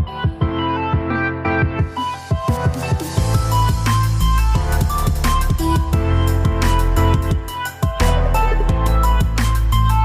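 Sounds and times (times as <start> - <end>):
electronic music with steady beat: 0.0 - 10.0
heavy bass line: 3.1 - 10.0.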